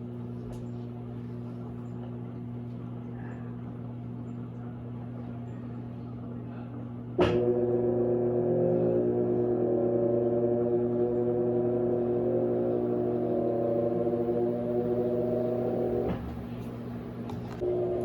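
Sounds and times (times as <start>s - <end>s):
washing machine motor hum: 0.0s - 18.0s
washing machine clunk: 7.2s - 7.7s.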